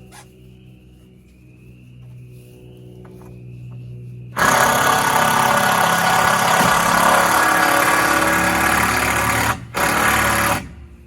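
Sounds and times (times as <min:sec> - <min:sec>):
motor running loudly: 0:03.0 - 0:10.9.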